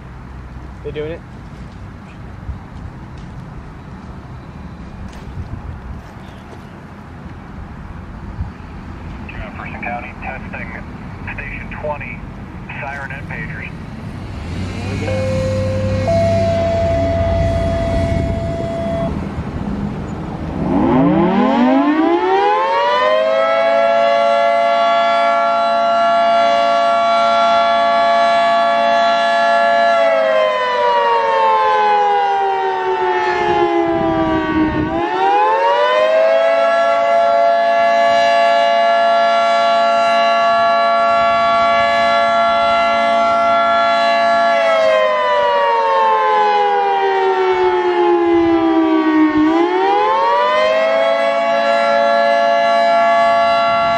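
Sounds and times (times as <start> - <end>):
three-tone warning siren: 14.7 - 19.5, 20.4 - 53.9.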